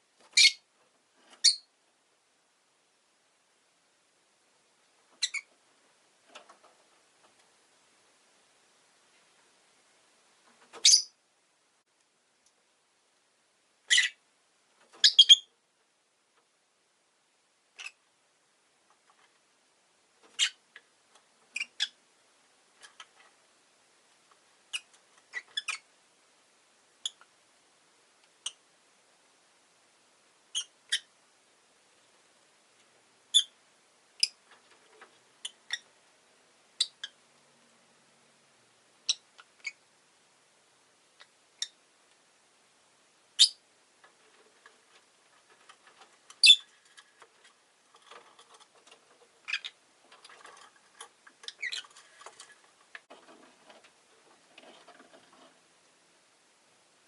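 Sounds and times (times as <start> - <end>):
lovebird chirping: 0.3 - 0.7, 1.3 - 1.7, 5.2 - 5.5, 10.8 - 11.2, 13.8 - 14.2, 15.0 - 15.5, 17.8 - 18.0, 20.3 - 20.6, 21.5 - 22.0, 24.7 - 25.9, 27.0 - 27.2, 30.5 - 31.1, 33.3 - 33.6, 35.4 - 35.9, 36.8 - 37.2, 39.0 - 39.8, 41.6 - 41.8, 43.4 - 43.6, 46.4 - 46.7, 49.4 - 49.8, 51.4 - 52.0.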